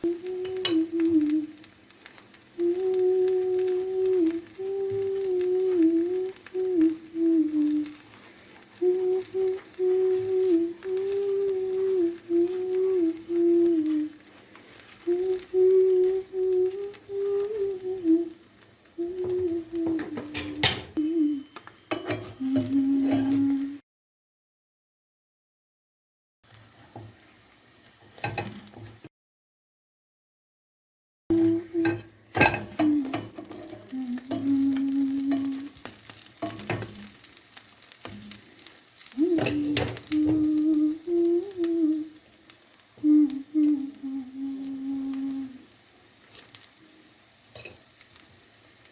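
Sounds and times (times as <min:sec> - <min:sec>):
wordless humming-like melody: 0:00.0 - 0:01.6, 0:19.0 - 0:21.6
food sizzling in a frying pan: 0:00.0 - 0:23.8, 0:26.4 - 0:29.1, 0:31.3 - 0:48.9
low humming tone: 0:19.0 - 0:23.8, 0:31.3 - 0:37.1.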